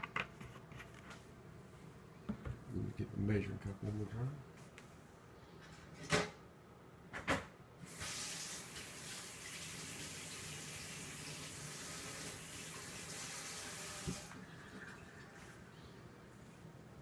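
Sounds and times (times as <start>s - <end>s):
tap running into sink: 14.0s - 14.3s.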